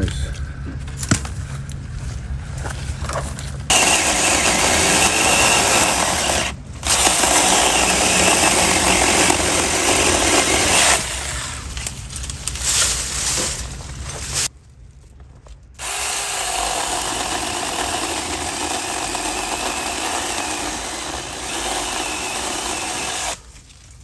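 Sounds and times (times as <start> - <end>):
electric chainsaw cutting wood: 3.7 - 11.6, 15.8 - 23.5.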